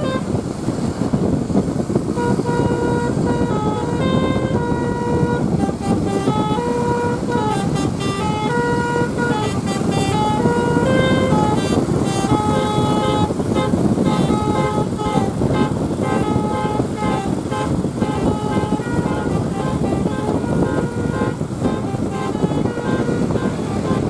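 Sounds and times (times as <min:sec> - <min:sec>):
musical air horn playing a tune: 0:00.0 - 0:00.9, 0:02.0 - 0:24.0
bus running and road noise: 0:00.0 - 0:24.0.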